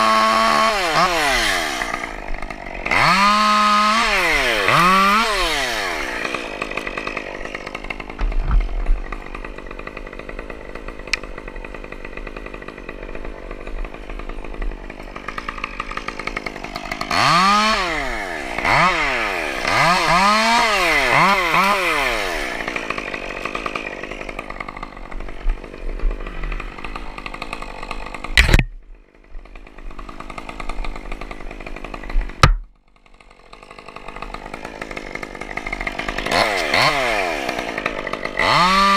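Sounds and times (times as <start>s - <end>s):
chainsaw revving and idling: 0.0s - 38.9s
sharp knocks: 28.4s - 28.8s, 32.4s - 32.7s.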